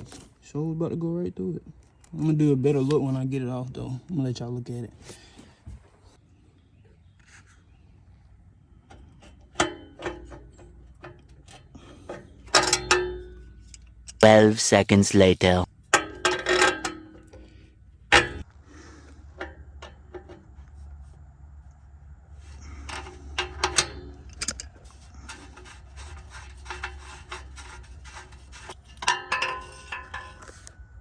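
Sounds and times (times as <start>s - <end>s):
steady low hum: 0.4s - 31.0s
metal clicks: 8.8s - 14.3s, 15.9s - 20.8s, 22.4s - 30.8s
hand tools rubbing and scraping: 9.0s - 14.3s, 22.4s - 30.8s.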